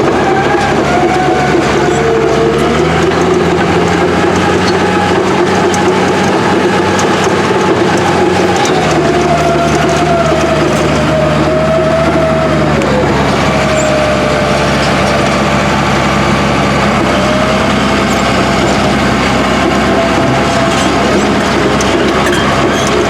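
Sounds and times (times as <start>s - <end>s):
heavy equipment engine running: 0.0s - 23.0s.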